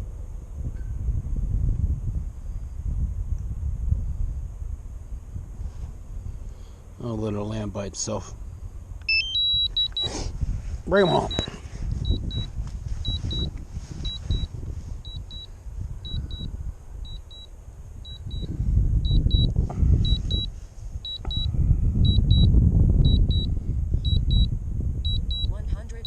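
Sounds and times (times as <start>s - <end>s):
wind buffeting microphone: 0.0s - 7.0s, 8.3s - 26.0s
high double warning beeps: 9.0s - 10.2s, 10.9s - 26.0s.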